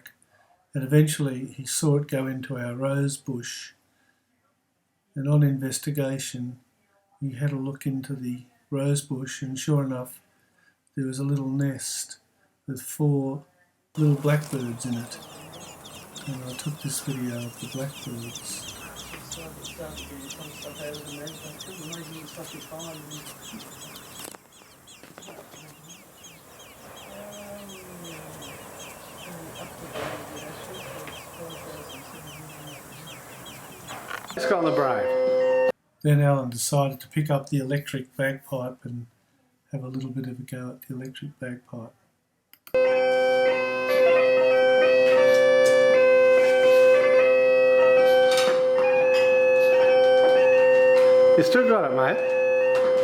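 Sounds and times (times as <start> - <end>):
electronic bagpipe melody: 14.0 - 27.3, 28.1 - 35.7, 42.8 - 53.0
nestlings high chirps: 14.0 - 35.5
bagpipe drones: 14.0 - 35.7
click: 42.5 - 42.8.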